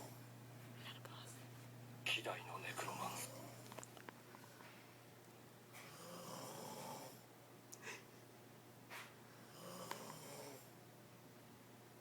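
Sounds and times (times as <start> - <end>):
woman snoring: 5.9 - 7.2, 9.4 - 10.7.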